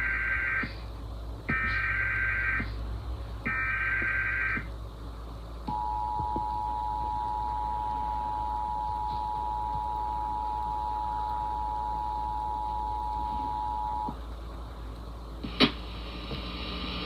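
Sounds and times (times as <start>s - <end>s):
two-tone attention signal: 5.7s - 14.1s.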